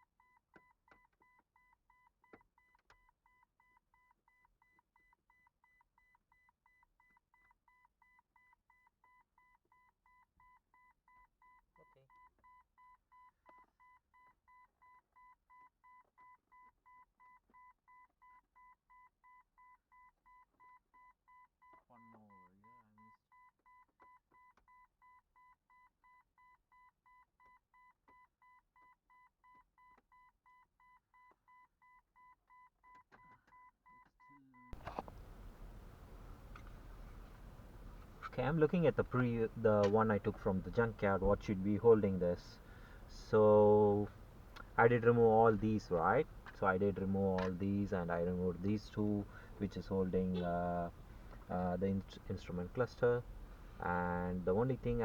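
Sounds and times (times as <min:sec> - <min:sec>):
car warning chime beeping: 0:34.6 - 0:55.0.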